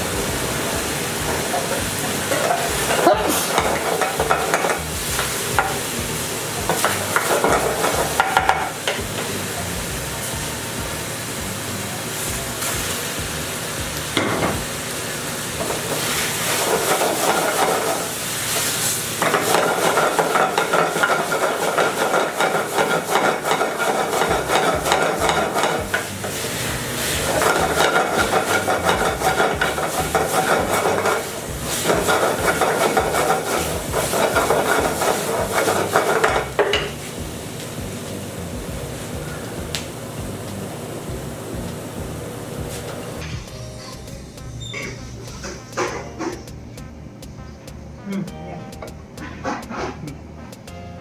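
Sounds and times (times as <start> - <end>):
food sizzling: 0.0 - 46.9
spatula scraping a wok: 0.1 - 6.0, 6.7 - 9.0, 15.6 - 37.2.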